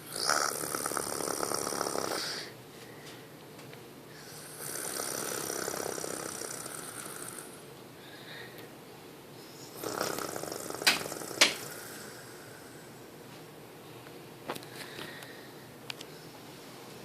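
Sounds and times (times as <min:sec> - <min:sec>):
heavy snoring: 0:00.0 - 0:02.5, 0:04.2 - 0:07.6, 0:09.5 - 0:13.0
quiet breathing: 0:00.8 - 0:03.4, 0:04.1 - 0:08.7, 0:09.3 - 0:13.2, 0:13.8 - 0:16.9.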